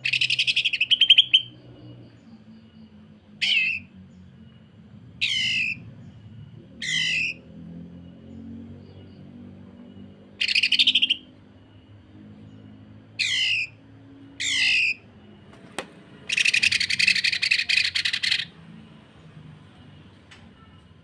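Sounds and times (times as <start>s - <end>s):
buzzy bird trill: 0.0s - 4.6s, 5.2s - 7.5s, 9.9s - 11.9s, 12.6s - 15.4s, 16.2s - 18.6s.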